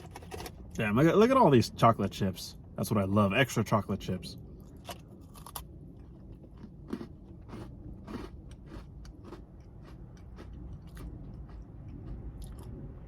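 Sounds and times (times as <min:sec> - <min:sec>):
low steady rumble: 0:00.0 - 0:13.0
cookie crunching while chewed: 0:04.6 - 0:12.8.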